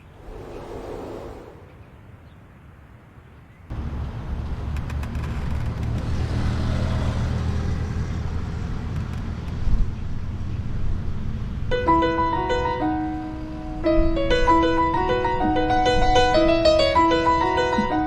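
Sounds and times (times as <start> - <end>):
vehicle passing rumble: 0.0 - 2.2.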